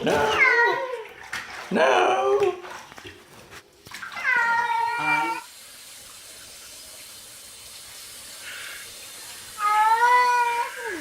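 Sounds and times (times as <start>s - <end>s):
cat meowing: 4.2s - 5.4s.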